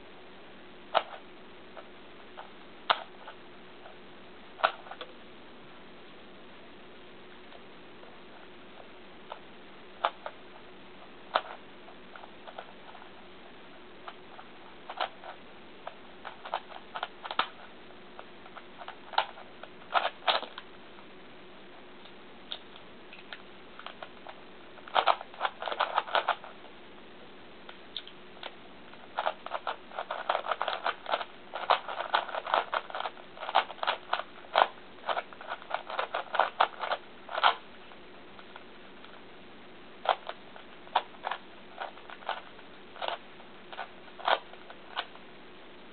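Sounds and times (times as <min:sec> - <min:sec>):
puzzle cube layers clicking: 0:24.9 - 0:26.5, 0:29.2 - 0:37.7.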